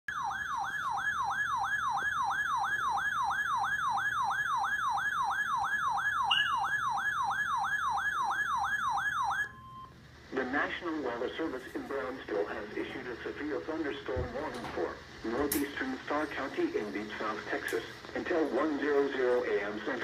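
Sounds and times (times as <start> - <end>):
electronic siren alert tone sweeping down: 0.1 - 9.6.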